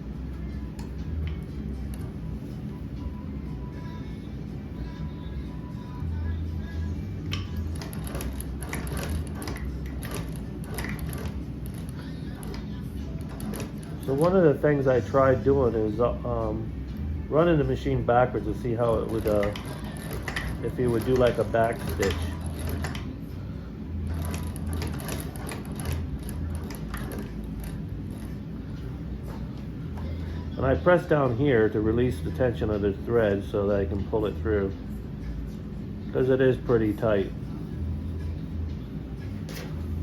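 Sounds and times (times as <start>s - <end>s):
hand-cranked sewing machine clicking: 7.3s - 14.9s, 18.4s - 23.1s, 24.1s - 28.3s.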